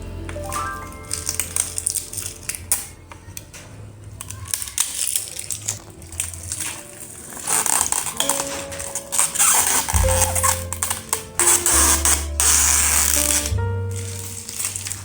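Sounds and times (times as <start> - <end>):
rustling: 0.0 - 15.0
objects clicking and knocking: 0.4 - 12.2.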